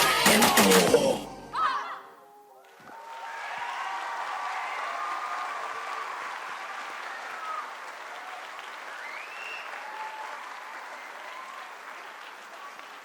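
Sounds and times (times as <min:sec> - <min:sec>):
high whoops: 0:02.9 - 0:06.1, 0:07.0 - 0:11.8
audience applauding: 0:02.9 - 0:13.0.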